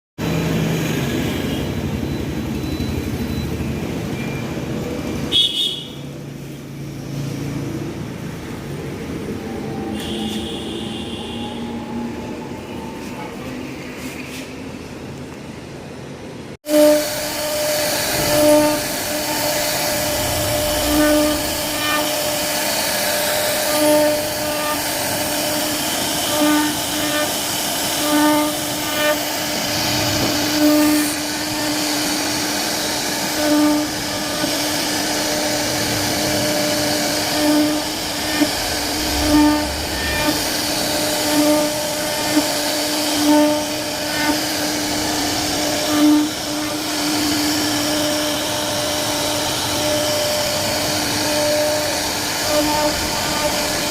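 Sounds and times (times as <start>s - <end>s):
router spindle whine: 0.2s - 5.3s, 6.7s - 13.8s, 16.7s - 53.9s
router cutting wood: 16.6s - 53.9s.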